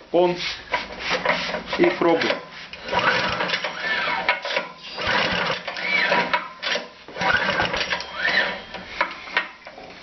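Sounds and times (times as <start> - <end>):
recoil starter pull rattle: 2.2 - 8.6.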